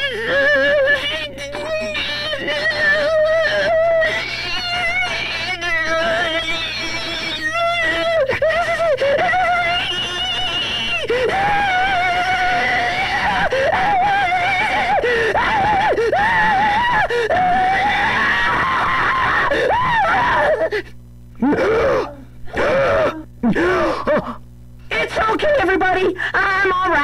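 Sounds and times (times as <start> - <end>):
cartoon character screaming: 0.1 - 20.8.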